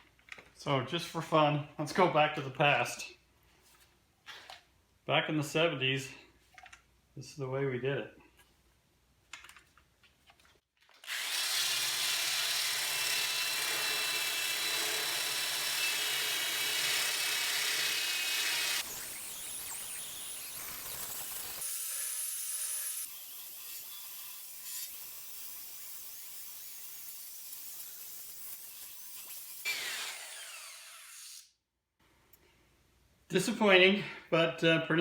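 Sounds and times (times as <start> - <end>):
power tool grinding metal: 11.0 - 31.4.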